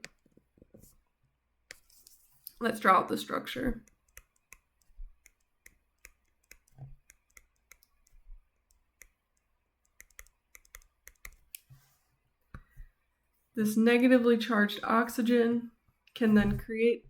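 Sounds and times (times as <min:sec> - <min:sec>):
stylus tapping on tablet: 0:03.8 - 0:09.2, 0:09.9 - 0:11.6.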